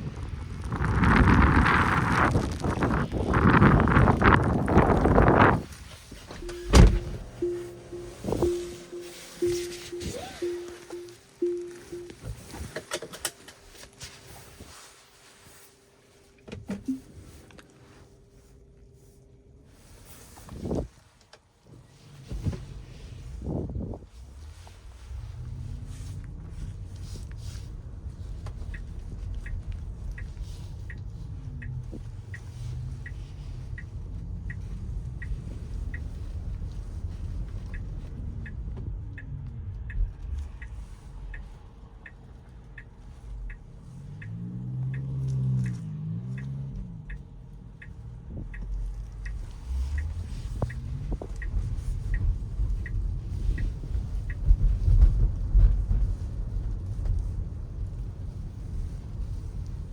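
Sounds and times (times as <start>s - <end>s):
road and tyre rumble: 0.0s - 59.9s
turn signal ticking: 6.3s - 12.5s, 25.4s - 59.9s.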